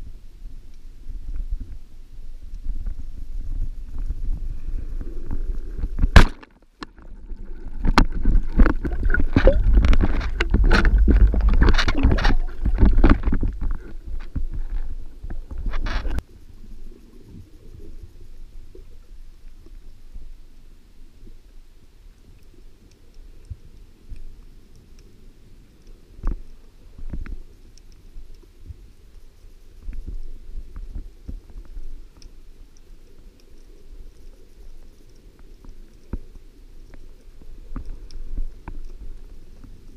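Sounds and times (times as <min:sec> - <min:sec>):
water splashing against camera: 0:01.2 - 0:16.3
low rumble: 0:07.1 - 0:16.3
faint clicks: 0:22.0 - 0:39.9.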